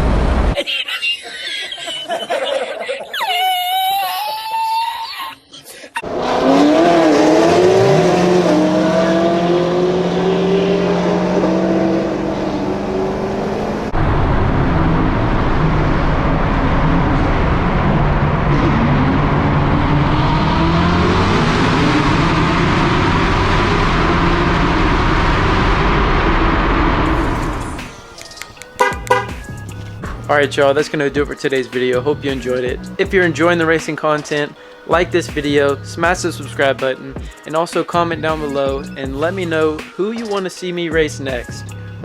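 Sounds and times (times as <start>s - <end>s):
car engine at full throttle: 0.0s - 0.6s, 6.0s - 30.3s
wind and road noise: 0.0s - 0.6s, 6.1s - 30.3s.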